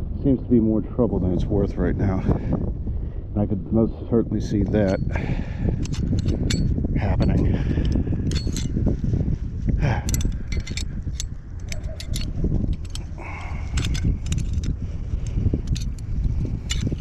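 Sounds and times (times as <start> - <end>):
wind buffeting microphone: 0.0 - 17.0
light clicks and rattles: 4.6 - 9.1, 9.8 - 17.0.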